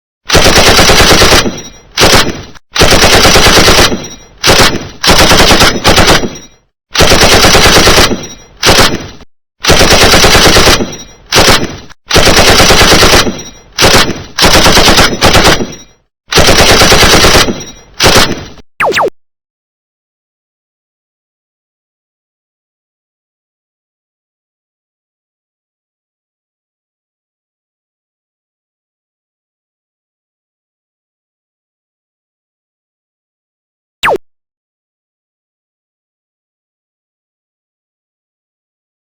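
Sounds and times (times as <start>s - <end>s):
machine gun bursts: 0.3s - 19.1s.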